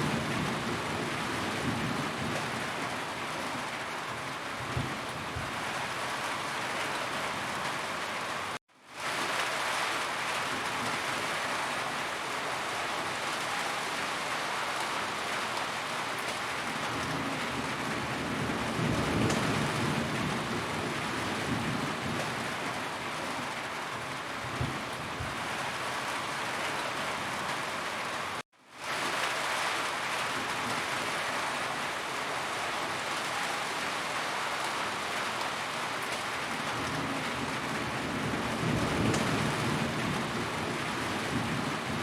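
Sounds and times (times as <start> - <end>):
low rumble of thunder: 0.0 - 2.9, 16.8 - 22.8, 24.4 - 25.6, 36.7 - 42.0
rain on a roof: 0.0 - 42.0.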